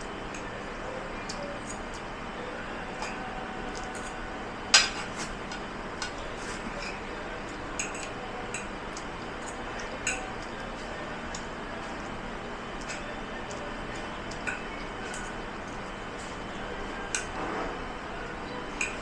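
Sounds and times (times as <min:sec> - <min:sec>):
dishes and cutlery clinking: 0:02.9 - 0:07.1, 0:07.8 - 0:08.7, 0:09.4 - 0:10.6, 0:12.8 - 0:13.6, 0:14.3 - 0:15.4, 0:18.8 - 0:19.0.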